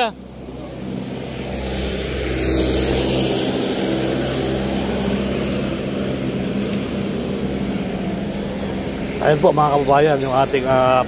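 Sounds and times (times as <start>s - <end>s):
road noise: 0.0s - 11.0s
vehicle engine running: 0.0s - 11.0s.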